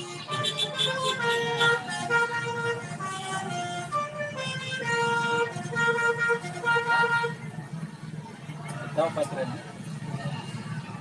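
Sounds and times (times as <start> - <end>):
bus multi-tone horn tune: 0.0 - 7.6.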